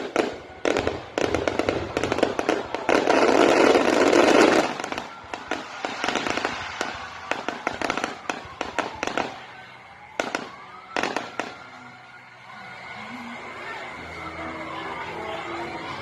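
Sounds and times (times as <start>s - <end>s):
fireworks cracking and popping: 0.0s - 11.7s
fireworks crackling: 0.0s - 12.0s.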